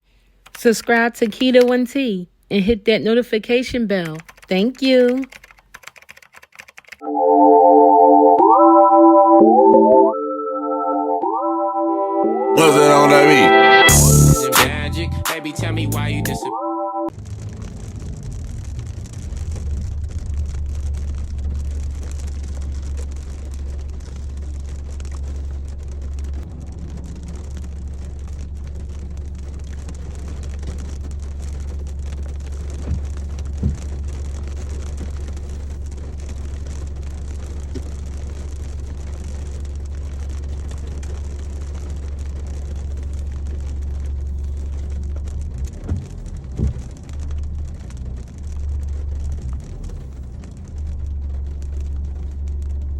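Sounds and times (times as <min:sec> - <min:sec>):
car engine and road noise: 0:17.1 - 0:52.9
rain and wet tyres hiss: 0:17.1 - 0:52.9.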